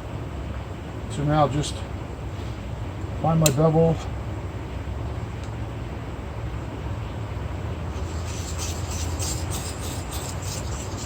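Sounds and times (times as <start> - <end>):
blade scraping on sharpening stone: 8.0 - 11.0.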